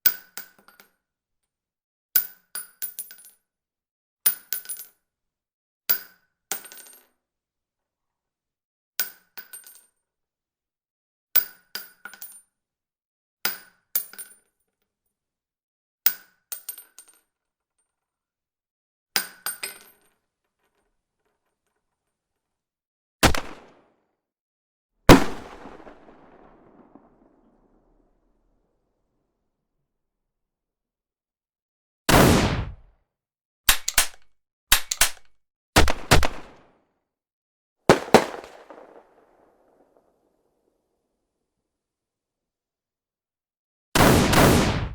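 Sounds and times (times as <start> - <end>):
gunshots: 23.2 - 23.8, 25.1 - 27.2, 32.1 - 32.9, 33.7 - 36.7, 37.9 - 39.5, 44.0 - 44.9.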